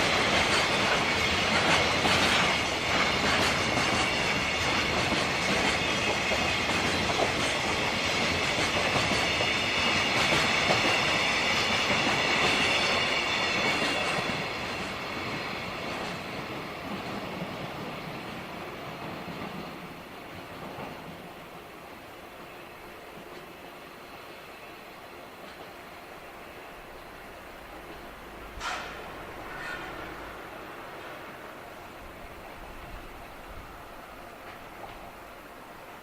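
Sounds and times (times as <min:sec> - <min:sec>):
train wheels clattering over rail joints: 0:00.0 - 0:21.2, 0:27.8 - 0:30.4
high wheel squeal: 0:28.6 - 0:30.4.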